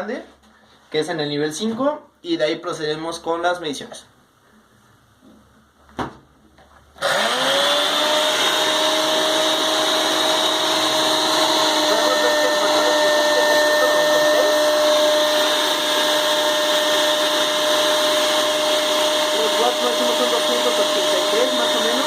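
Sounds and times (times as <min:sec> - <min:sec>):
blender motor whine: 0:07.0 - 0:22.0.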